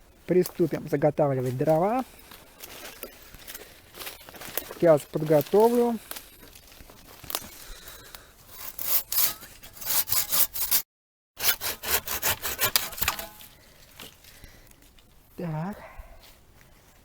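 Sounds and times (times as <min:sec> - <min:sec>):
hand saw cutting wood: 0:08.4 - 0:13.5.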